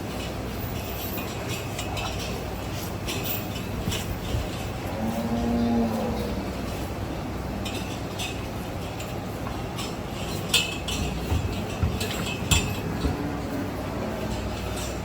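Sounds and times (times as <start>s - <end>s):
cow mooing: 4.8s - 6.6s.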